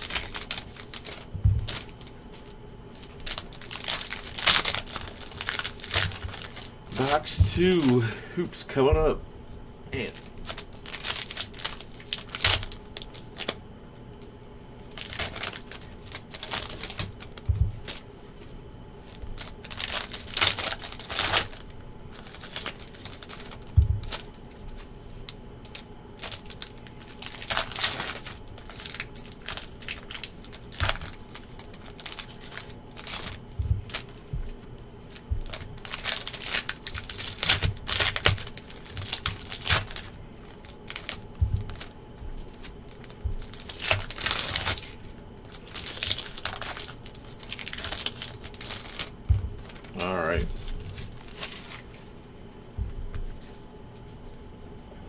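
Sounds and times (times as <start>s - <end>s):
plastic wrappers crinkling and tearing: 0.0s - 8.2s, 10.0s - 52.2s
cards rustling: 3.0s - 9.2s, 25.6s - 52.2s
soft low thumps: 41.4s - 41.7s, 52.7s - 53.3s.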